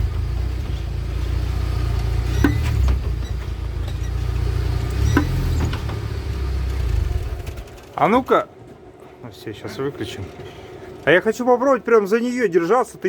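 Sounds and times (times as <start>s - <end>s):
vehicle drivetrain running: 0.0s - 13.0s
sharp click from drive axle: 1.9s - 3.1s, 3.9s - 6.1s.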